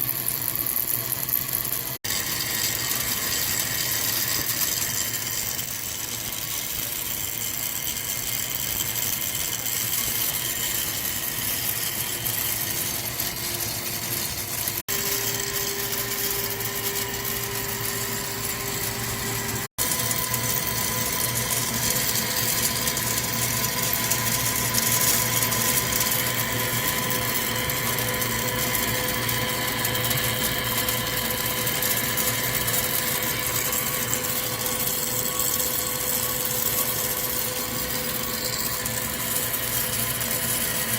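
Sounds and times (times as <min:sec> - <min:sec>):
lathe machine hum and whine: 0:00.0 - 0:40.9.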